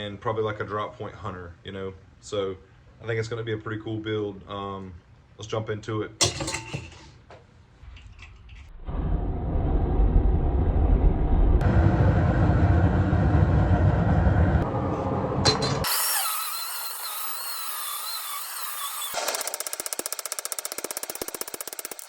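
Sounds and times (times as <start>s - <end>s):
forge roaring: 8.7s - 15.9s.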